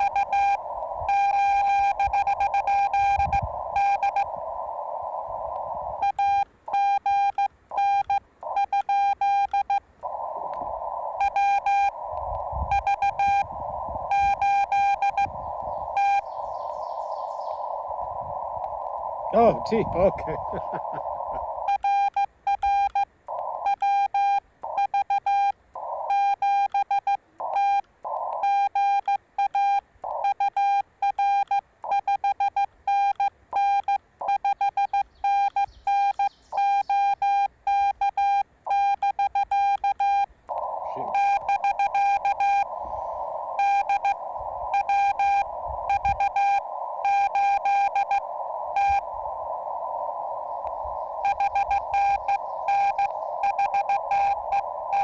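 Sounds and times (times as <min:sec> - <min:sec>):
morse code tones: 0:00.0 - 0:04.3, 0:06.0 - 0:10.2, 0:11.2 - 0:12.0, 0:12.6 - 0:16.4, 0:19.3 - 0:49.1, 0:51.2 - 0:55.0
receiver hiss: 0:00.0 - 0:55.0.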